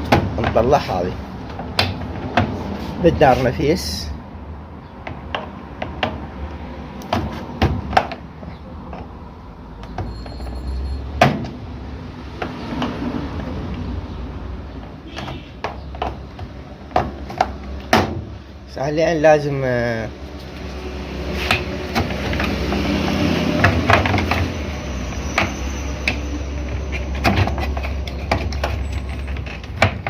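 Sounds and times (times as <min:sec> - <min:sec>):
plastic and metal clicks and knocks: 0:27.2 - 0:30.0.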